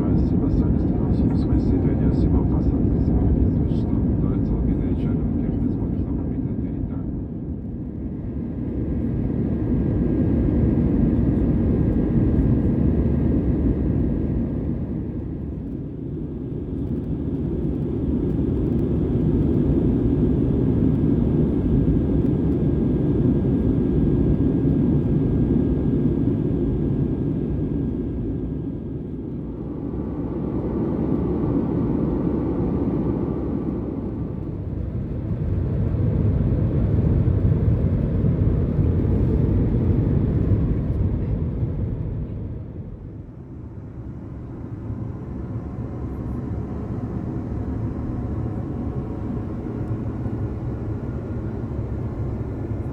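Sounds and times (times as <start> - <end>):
jet engines and airframe rumbling: 0.0 - 52.9.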